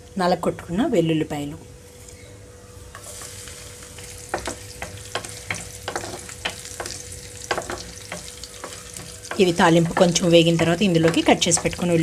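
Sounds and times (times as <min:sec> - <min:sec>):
spices sizzling in hot oil: 0:02.8 - 0:12.0
spoon stirring against pan: 0:03.0 - 0:12.0.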